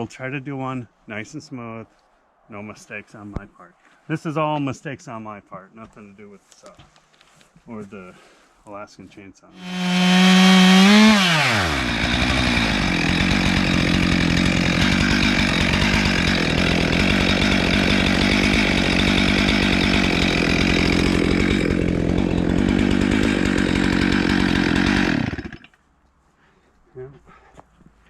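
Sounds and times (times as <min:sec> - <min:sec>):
chainsaw cutting log: 0:09.6 - 0:25.8.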